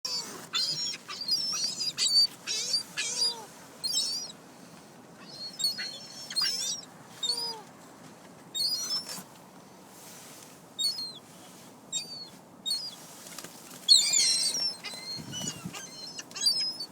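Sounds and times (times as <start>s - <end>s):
flock of birds chirping: 0.1s - 4.4s, 5.2s - 7.6s, 8.6s - 9.2s, 11.9s - 16.9s.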